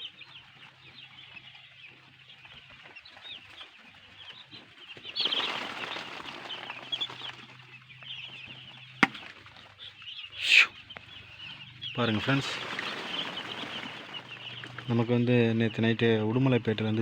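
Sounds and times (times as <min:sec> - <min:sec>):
chicks peeping: 0:00.0 - 0:17.0
rustling: 0:01.4 - 0:09.8, 0:11.4 - 0:15.3.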